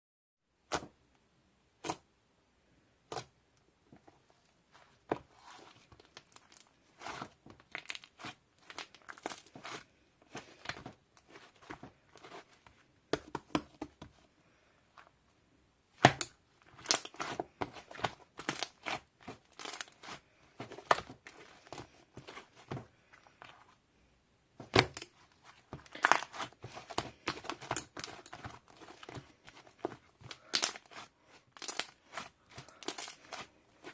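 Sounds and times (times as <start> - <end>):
crinkling and tearing: 16.6 - 23.4, 24.7 - 33.9.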